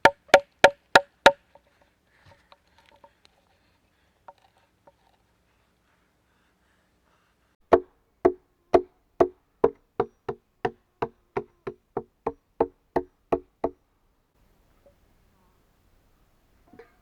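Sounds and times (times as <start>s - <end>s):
tool knocking on wood: 7.7s - 13.8s.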